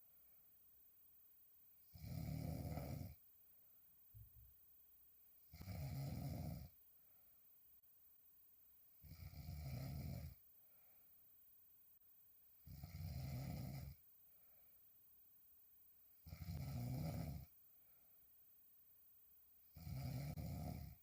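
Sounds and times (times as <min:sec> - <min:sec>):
woman snoring: 0:01.9 - 0:03.2, 0:05.5 - 0:06.8, 0:09.0 - 0:10.4, 0:12.7 - 0:14.0, 0:16.3 - 0:17.5, 0:19.8 - 0:21.0.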